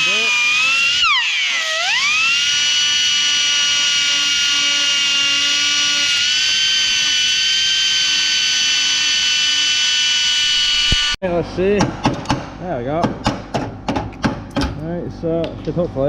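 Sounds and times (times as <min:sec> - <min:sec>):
grinder whining cutting metal: 0:00.0 - 0:11.2.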